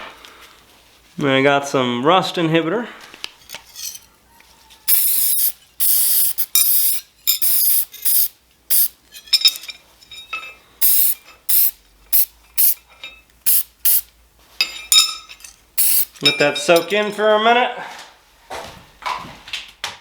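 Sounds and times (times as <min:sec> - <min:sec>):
aerosol can spraying bursts: 0:04.9 - 0:09.0, 0:10.8 - 0:12.8, 0:13.5 - 0:14.1, 0:15.8 - 0:16.2.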